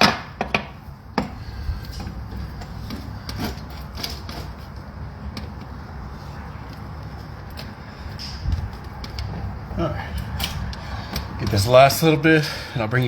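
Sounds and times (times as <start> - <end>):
scraping against wood: 0.0 - 11.6.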